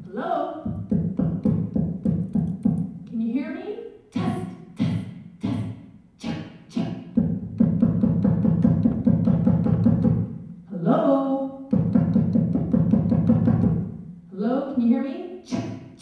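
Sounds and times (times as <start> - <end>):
rapid drum-like thumping: 0.7 - 3.0, 4.2 - 10.4, 11.7 - 14.0.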